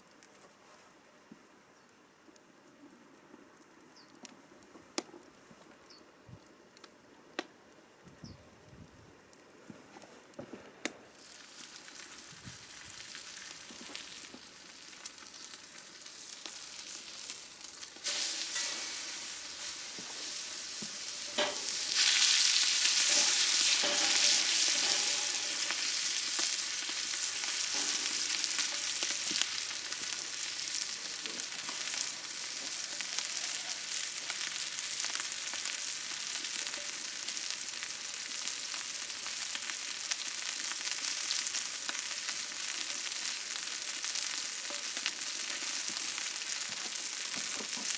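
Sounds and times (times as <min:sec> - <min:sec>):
food sizzling in a pan: 0:11.1 - 0:47.9.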